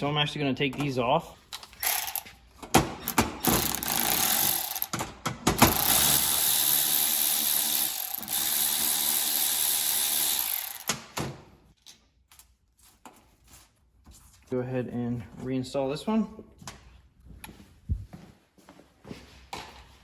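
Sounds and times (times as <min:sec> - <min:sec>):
power tool running: 0:01.8 - 0:02.4, 0:03.0 - 0:05.0, 0:05.6 - 0:11.2.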